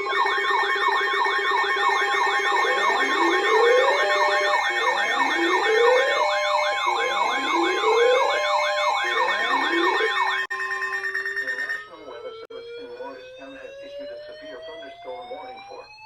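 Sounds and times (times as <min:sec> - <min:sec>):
electronic siren tones: 0:00.0 - 0:16.0
steady alarm tones: 0:00.0 - 0:16.0.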